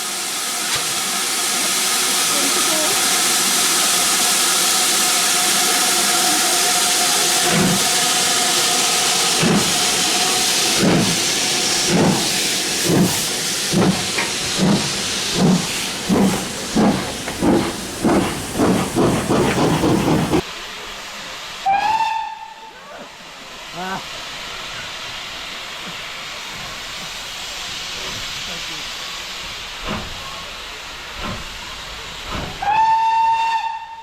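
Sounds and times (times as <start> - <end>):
steam hissing: 0.0 - 34.0
locomotive exhaust beats: 9.2 - 20.4.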